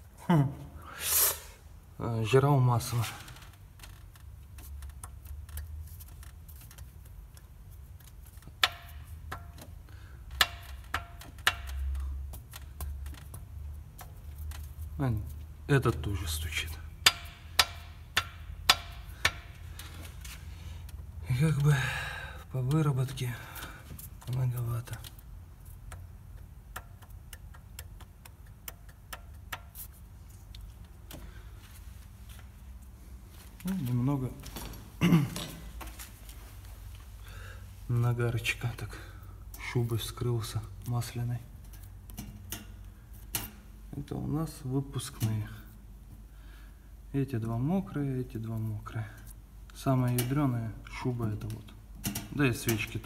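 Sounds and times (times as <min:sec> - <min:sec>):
light clicks and taps: 0:03.3 - 0:16.1, 0:22.6 - 0:31.4
piston knocking metal on metal: 0:17.0 - 0:19.6.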